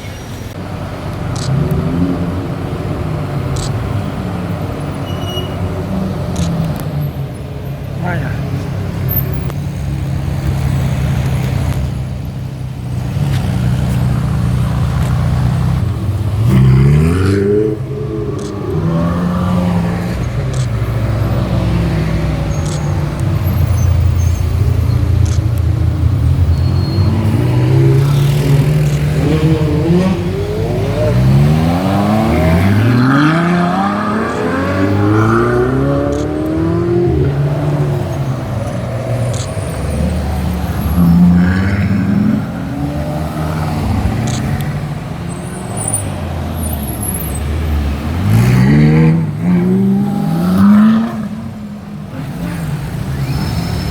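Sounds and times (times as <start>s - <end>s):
sports car engines revving: 0.0s - 53.9s.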